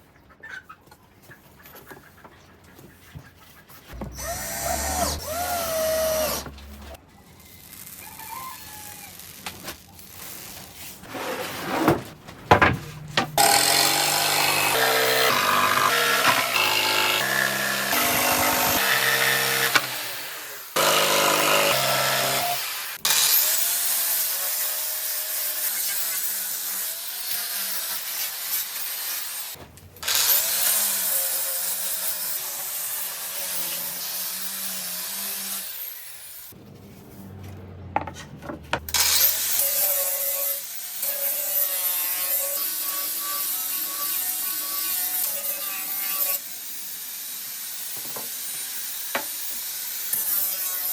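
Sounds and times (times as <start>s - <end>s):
power tools sawing: 3.9s - 7.0s, 13.2s - 36.6s, 38.8s - 50.9s.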